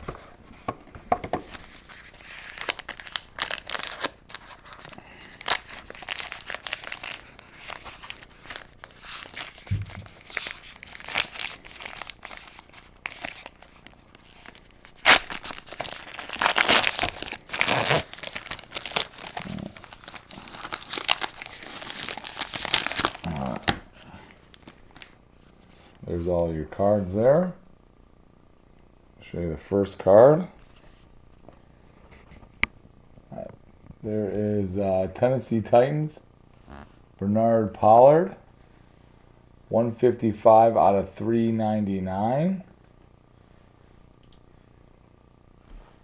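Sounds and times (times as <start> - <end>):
wrapper being torn and crinkled: 2.0 - 23.8.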